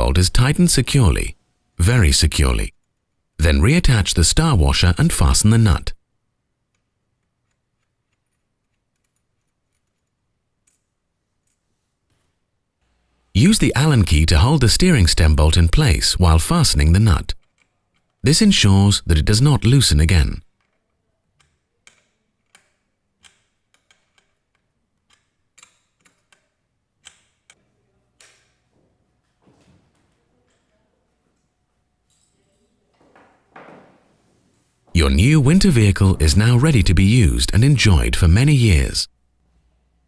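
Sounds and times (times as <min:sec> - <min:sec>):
faint small metal clicks: 0:20.6 - 0:27.6.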